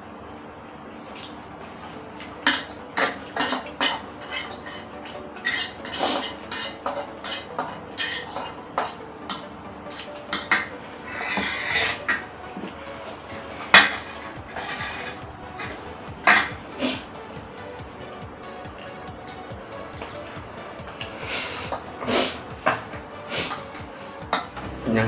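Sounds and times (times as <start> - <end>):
cutlery scraping bowls and plates: 2.4 - 12.7, 13.6 - 17.1.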